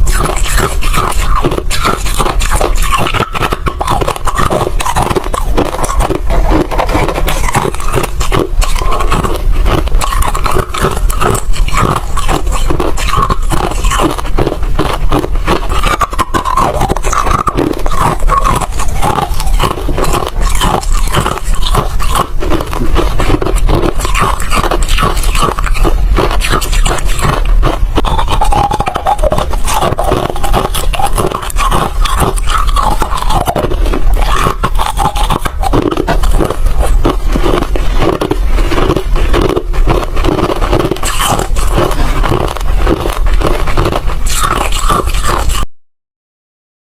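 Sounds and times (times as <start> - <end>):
ice crunching: 0.0 - 45.6.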